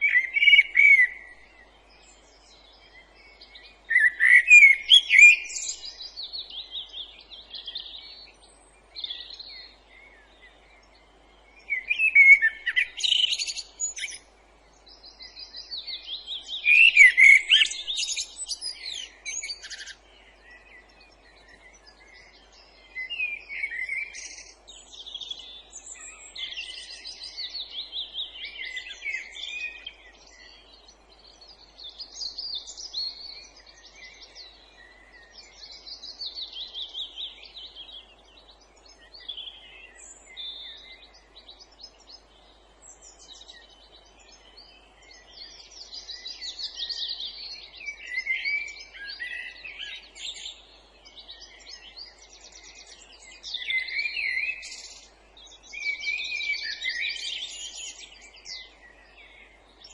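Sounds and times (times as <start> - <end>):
faint background hiss: 0.0 - 59.9
songbirds singing: 0.0 - 59.9.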